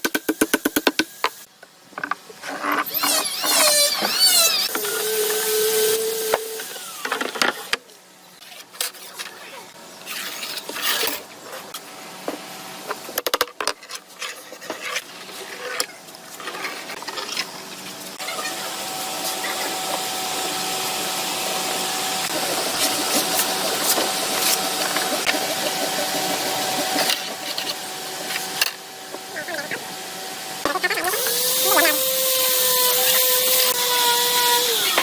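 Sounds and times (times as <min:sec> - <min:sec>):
small power tool whining: 0:02.9 - 0:07.6, 0:30.8 - 0:35.0.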